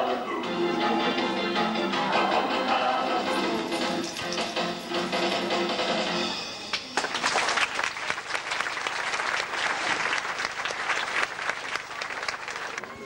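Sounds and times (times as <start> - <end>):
song: 0.0 - 6.8
audience applauding: 6.7 - 13.0.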